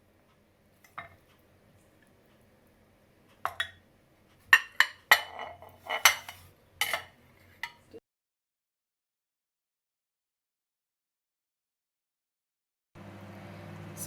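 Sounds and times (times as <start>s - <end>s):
spoon clinking against dishes: 4.5s - 7.8s.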